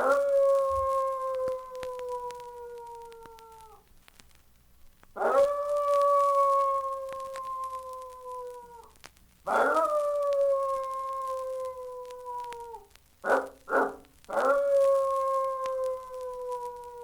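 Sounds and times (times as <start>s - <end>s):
dog howling: 0.0s - 3.8s, 5.2s - 17.0s
dog yelps: 5.2s - 5.6s, 9.5s - 10.0s, 12.1s - 15.3s.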